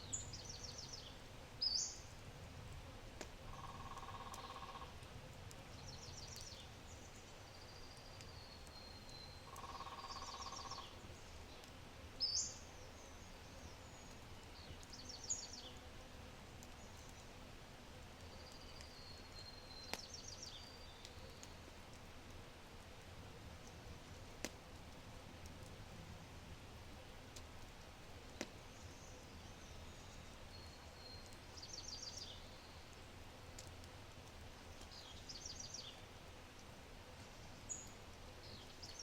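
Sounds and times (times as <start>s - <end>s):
songbirds singing: 0.0s - 2.2s, 3.4s - 16.0s, 18.2s - 21.8s, 28.2s - 33.7s, 34.5s - 39.0s
fire crackling pops: 2.0s - 9.8s, 10.5s - 15.4s, 16.5s - 29.0s, 32.7s - 39.0s.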